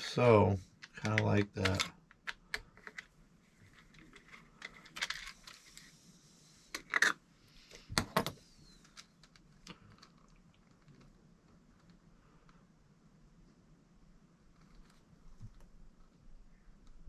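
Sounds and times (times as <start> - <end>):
small parts clicking and rattling: 0.7 - 5.9.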